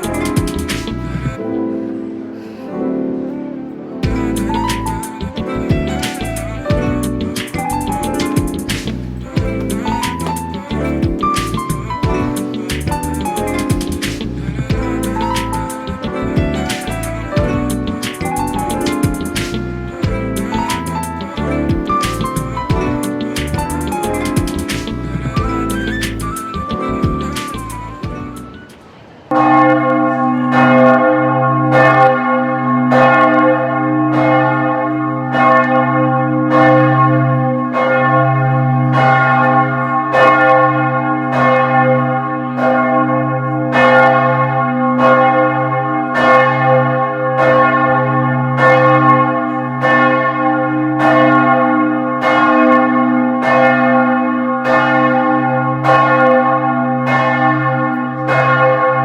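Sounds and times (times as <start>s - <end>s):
deep bell hum: 0.0s - 1.4s, 4.0s - 28.6s
large church bell ringing: 0.0s - 25.8s, 29.3s - 59.0s.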